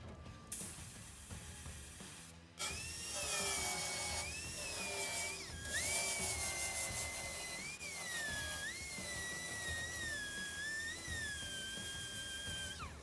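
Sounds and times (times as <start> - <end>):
background music: 0.0 - 13.0
power tool whining: 1.1 - 13.0.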